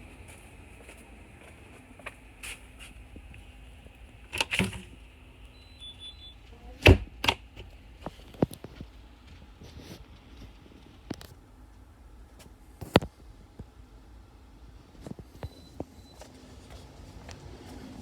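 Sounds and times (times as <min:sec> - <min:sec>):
faint high keypad beeps: 0:05.5 - 0:06.4.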